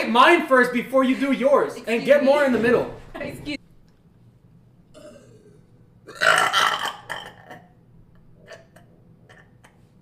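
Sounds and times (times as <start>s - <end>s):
person burping: 4.9s - 7.8s.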